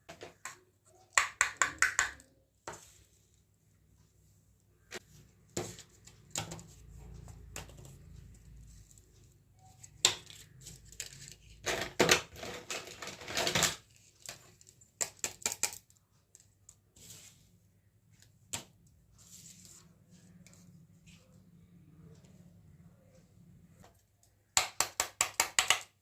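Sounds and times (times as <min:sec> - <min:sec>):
plastic toys scraping and rattling: 0:05.6 - 0:14.9.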